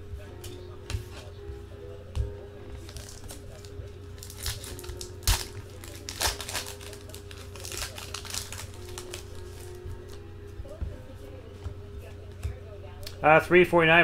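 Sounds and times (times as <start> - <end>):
faint background music: 0.0 - 14.0
plastic packaging crinkling: 2.8 - 10.2.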